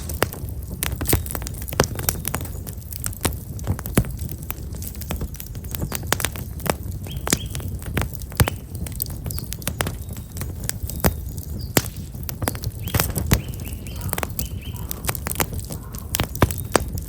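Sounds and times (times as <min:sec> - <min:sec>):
bonfire crackling and popping: 0:00.0 - 0:17.0
low rumble of flame: 0:00.0 - 0:17.0
small bird chirping: 0:07.0 - 0:07.7, 0:08.4 - 0:11.8, 0:12.5 - 0:17.0.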